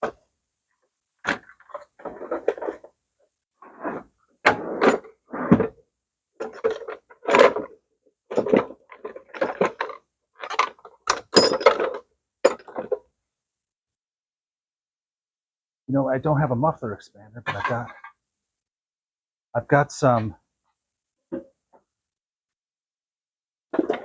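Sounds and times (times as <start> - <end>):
tools and parts clattering: 1.3 - 2.9, 6.4 - 13.1, 17.5 - 18.2, 23.8 - 24.0.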